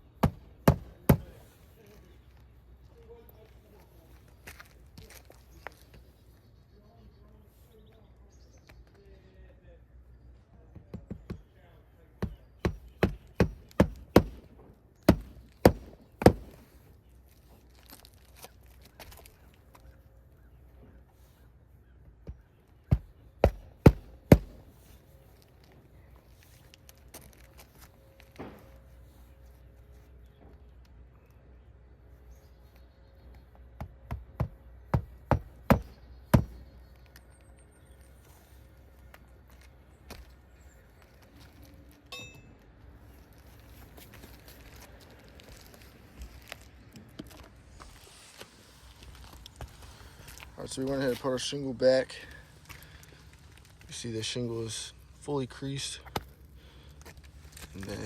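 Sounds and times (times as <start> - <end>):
hammer striking roofing nails: 0.2 - 1.4, 12.2 - 16.6, 22.9 - 24.7, 33.8 - 36.6.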